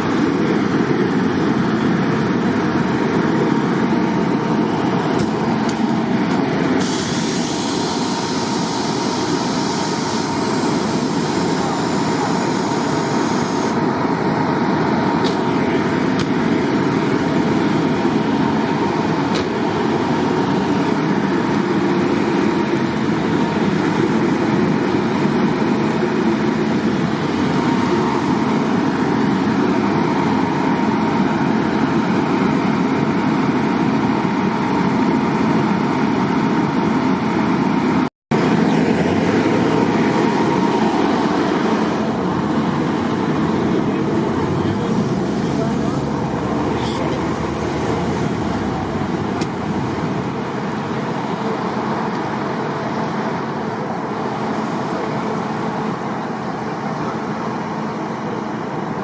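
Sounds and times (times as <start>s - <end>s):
road traffic noise: 0.0s - 59.0s
tyres hissing on wet road: 6.1s - 14.5s, 38.9s - 58.5s.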